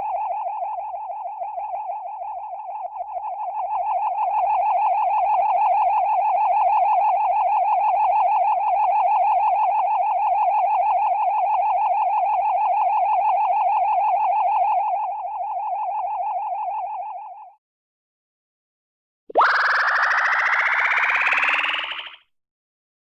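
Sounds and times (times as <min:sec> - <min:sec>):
warbling electronic magic tone: 0:19.3 - 0:22.2.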